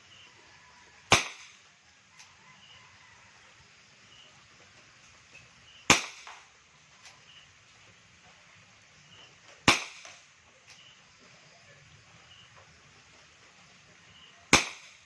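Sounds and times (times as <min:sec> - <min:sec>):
airsoft revolver shots: 0:01.1 - 0:01.7, 0:05.9 - 0:06.5, 0:09.6 - 0:10.3, 0:14.5 - 0:15.0.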